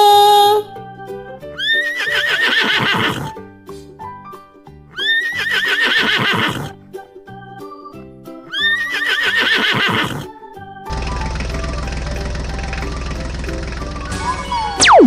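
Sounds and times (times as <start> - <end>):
background music: 0.0 - 15.0
horse whinnying: 1.6 - 3.4, 5.0 - 6.8, 8.5 - 10.4.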